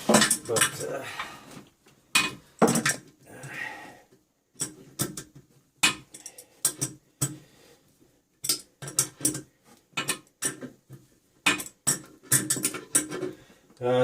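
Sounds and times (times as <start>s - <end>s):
tools clicking and clinking: 4.6s - 7.4s, 8.4s - 10.7s, 11.4s - 13.4s.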